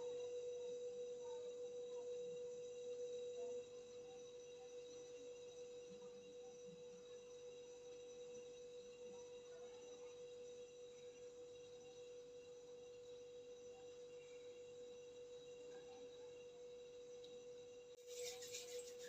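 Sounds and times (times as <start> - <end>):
faint steady mid-pitched tone: 18.0 - 19.0.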